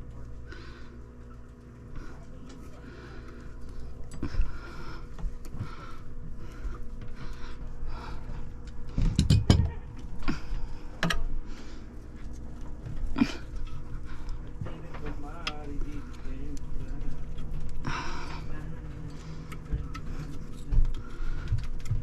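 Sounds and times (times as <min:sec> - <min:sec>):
low steady hum: 0:00.0 - 0:22.0
knocks and clunks: 0:08.9 - 0:09.8.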